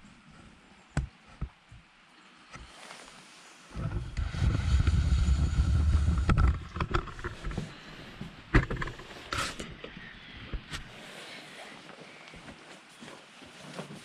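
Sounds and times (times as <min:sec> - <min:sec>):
low rumble: 0:03.8 - 0:07.7.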